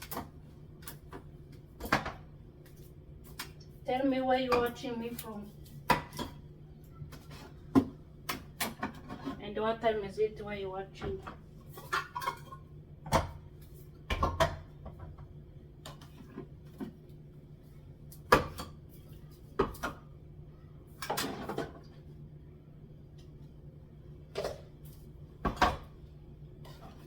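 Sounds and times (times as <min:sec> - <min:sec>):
kitchen items knocking on shelves: 0:14.1 - 0:15.3.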